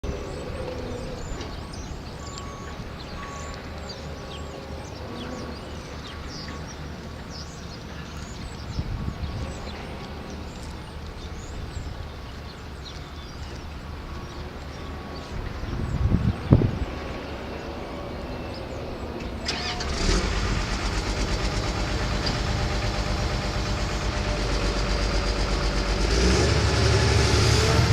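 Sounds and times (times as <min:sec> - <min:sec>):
small birds chirping: 0:00.1 - 0:17.4, 0:18.2 - 0:26.8
steady low rumble: 0:20.2 - 0:27.9.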